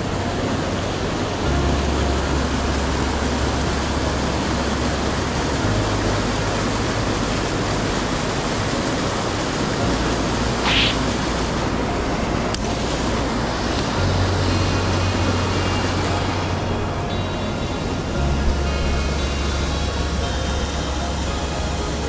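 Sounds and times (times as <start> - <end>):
low rumble: 0.0 - 22.0
stream water rushing over rocks: 0.0 - 22.0.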